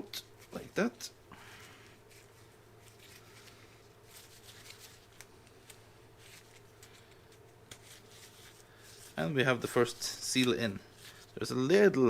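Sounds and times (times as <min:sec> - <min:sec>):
low steady hum: 0:00.0 - 0:12.0
faint clicks and rustles: 0:01.6 - 0:09.2.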